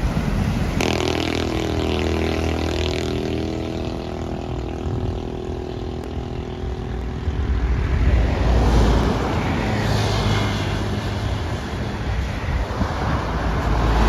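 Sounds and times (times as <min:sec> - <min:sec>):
bus diesel engine humming: 0:00.0 - 0:14.0
low rumble: 0:10.8 - 0:14.0.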